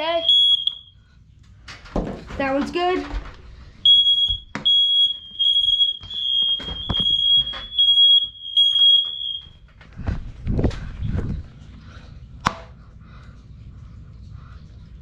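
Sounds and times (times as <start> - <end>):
smoke alarm beeping: 0.0 - 1.0, 3.8 - 9.7.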